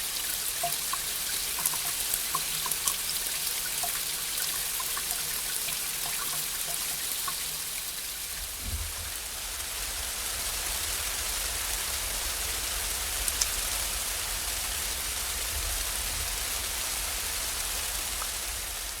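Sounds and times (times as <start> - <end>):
raindrops ticking: 0.0 - 7.6.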